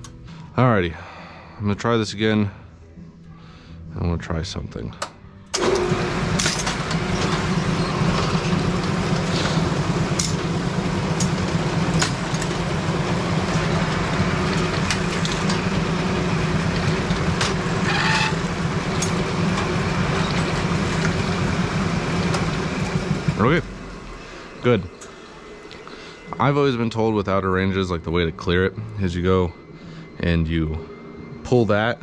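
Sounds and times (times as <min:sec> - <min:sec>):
pinsetter motor hum: 0:05.5 - 0:31.9
machine parts clanking: 0:05.6 - 0:23.0.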